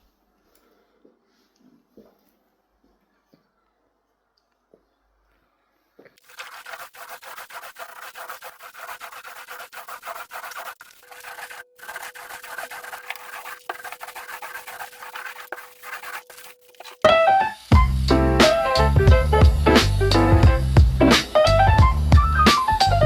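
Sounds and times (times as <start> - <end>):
scratchy rubbing strokes: 6.2 - 17.1.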